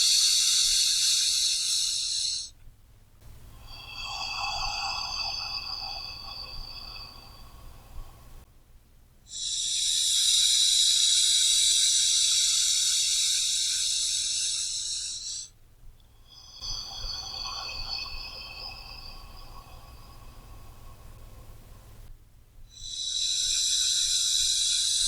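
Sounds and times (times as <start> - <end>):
person breathing deeply: 0.0 - 2.5, 3.3 - 8.4, 9.3 - 15.5, 22.8 - 25.0.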